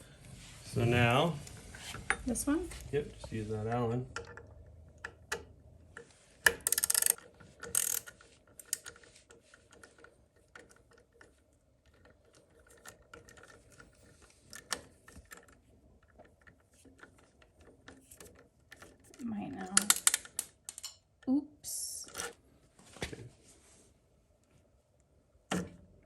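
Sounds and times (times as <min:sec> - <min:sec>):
small tool clicks: 0:06.5 - 0:08.1
ratchet clicking: 0:06.5 - 0:08.8.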